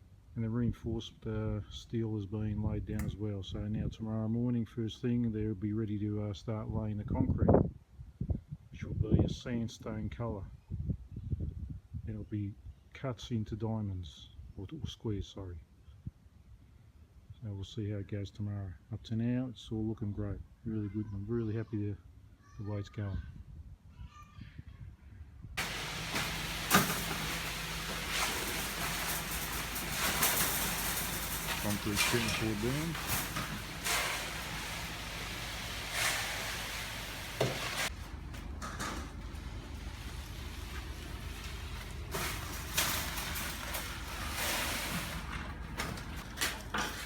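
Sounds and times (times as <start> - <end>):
rushing hiss: 25.6 - 38.0
truck engine running: 25.6 - 44.4.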